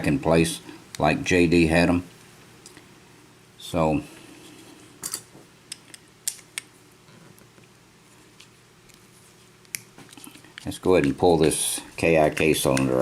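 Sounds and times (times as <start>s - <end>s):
quiet handling: 4.5s - 13.0s.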